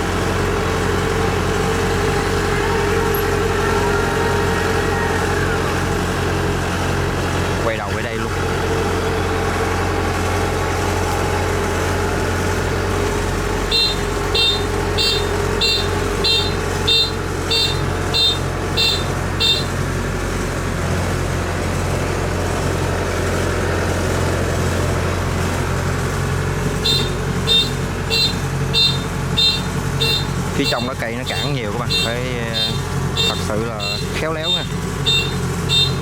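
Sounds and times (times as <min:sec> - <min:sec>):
diesel engine running: 0:00.0 - 0:36.0
short high warning beeps: 0:13.6 - 0:19.8, 0:26.8 - 0:36.0.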